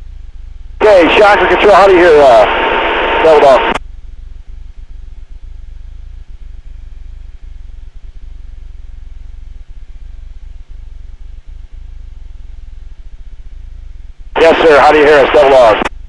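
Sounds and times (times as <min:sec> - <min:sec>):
aircraft engine drone through intercom: 0:00.8 - 0:03.8, 0:14.4 - 0:15.9.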